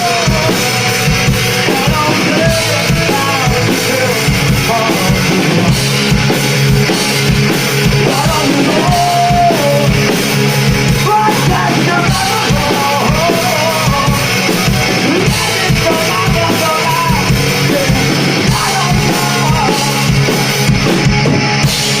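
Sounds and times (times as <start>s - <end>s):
distorted guitars and bass: 0.0s - 22.0s
driving drum kit: 0.0s - 22.0s
person singing lead: 8.0s - 10.0s, 11.0s - 20.5s.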